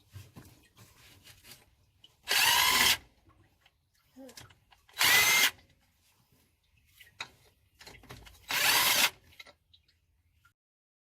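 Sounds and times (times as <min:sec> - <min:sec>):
power drill spinning: 0:02.2 - 0:03.1, 0:04.9 - 0:05.6, 0:08.4 - 0:09.2.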